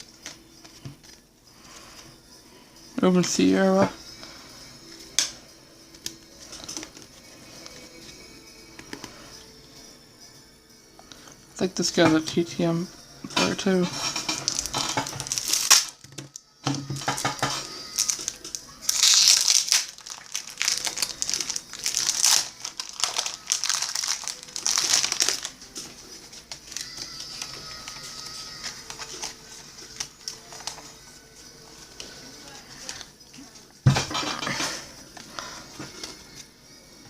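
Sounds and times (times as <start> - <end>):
trading cards rustling: 14.1 - 16.0, 16.9 - 33.1.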